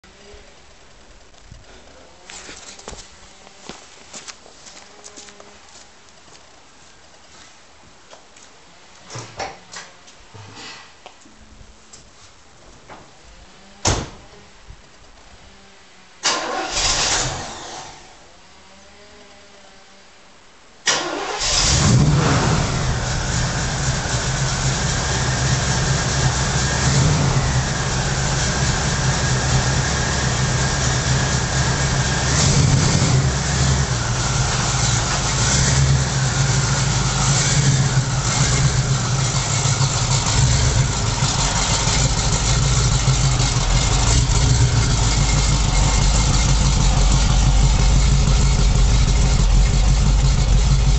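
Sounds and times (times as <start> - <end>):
engine cranking and firing: 16.2 - 18.0, 20.9 - 50.9
engine idling with small revs: 21.5 - 50.9.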